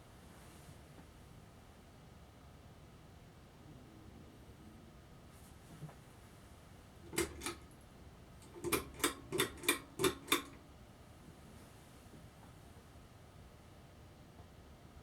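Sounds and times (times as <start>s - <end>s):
fan pull-chain switch clicks: 7.1s - 7.8s, 8.4s - 10.6s.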